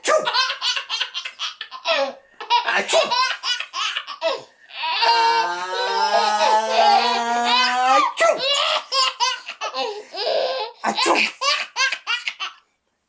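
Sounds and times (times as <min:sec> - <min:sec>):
baby laughing: 0:00.1 - 0:12.6.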